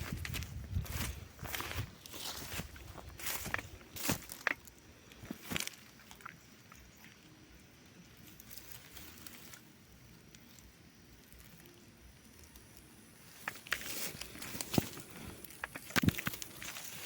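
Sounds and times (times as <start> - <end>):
footsteps through dry plants: 0.0 - 6.4, 8.2 - 9.7, 13.2 - 17.0
dry stems crackling: 0.0 - 7.2, 8.0 - 17.0.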